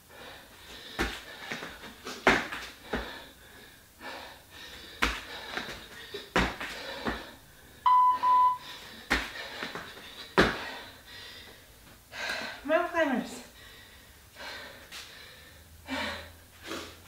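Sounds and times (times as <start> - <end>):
interval timer beeps: 7.9 - 8.6.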